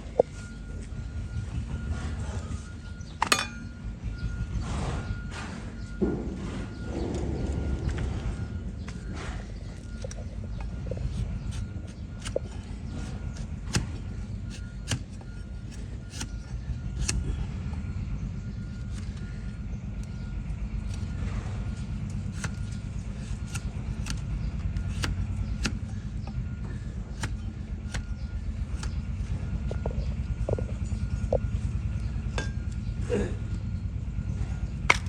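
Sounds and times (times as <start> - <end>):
steady low rumble: 0.0 - 35.0.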